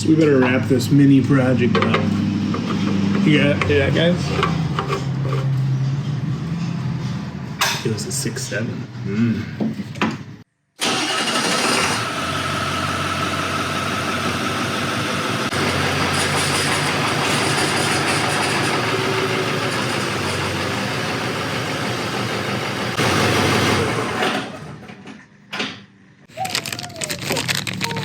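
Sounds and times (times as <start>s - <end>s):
diesel engine idling: 10.8s - 24.7s.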